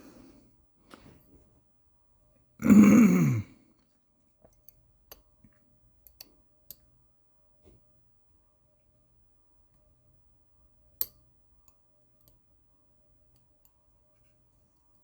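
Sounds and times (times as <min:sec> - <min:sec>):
man's wordless vocal sound: 0:02.6 - 0:03.5.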